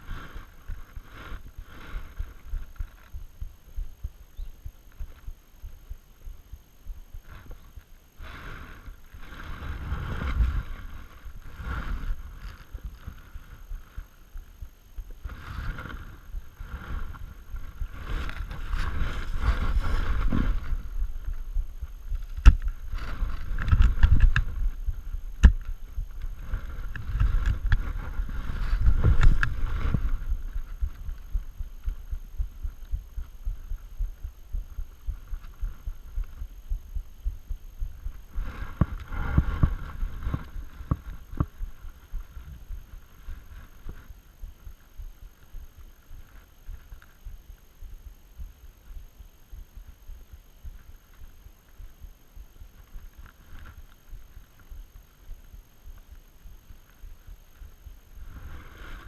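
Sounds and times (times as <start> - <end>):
handling noise rustling and thumps: 18.0 - 21.4.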